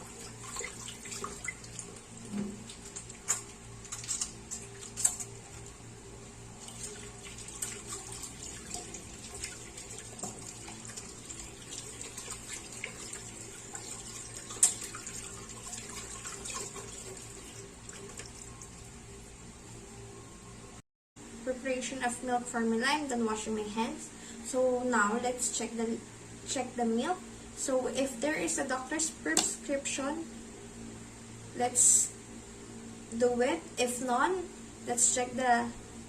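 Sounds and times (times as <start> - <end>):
hands washing with splashing: 0.0 - 5.3, 6.6 - 18.8.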